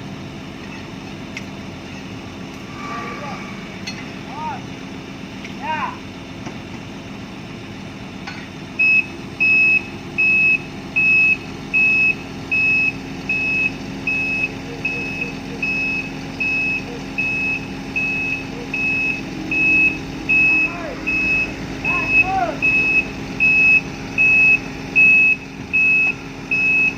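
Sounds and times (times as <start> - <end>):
diesel engine running: 0.0 - 26.9
backup alarm beeping: 8.8 - 26.9.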